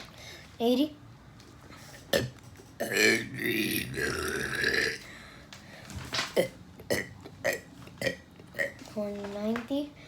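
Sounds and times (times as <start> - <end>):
person burping: 2.1 - 5.1, 6.4 - 8.8.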